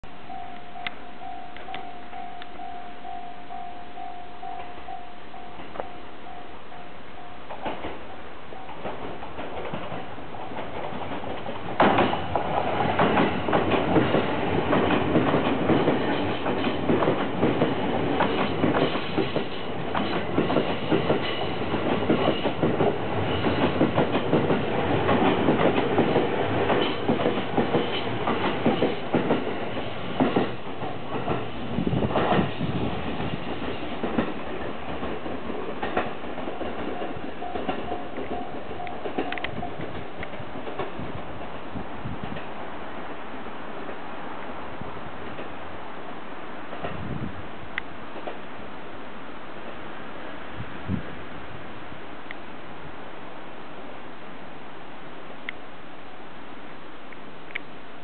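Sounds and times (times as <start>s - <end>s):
train wheels clicking over rail joints: 7.4s - 42.6s.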